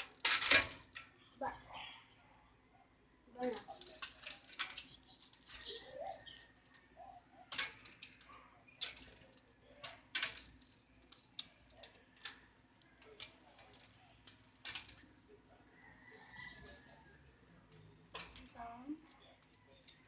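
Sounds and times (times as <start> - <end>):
cat claws scrabbling: 3.4 - 6.4.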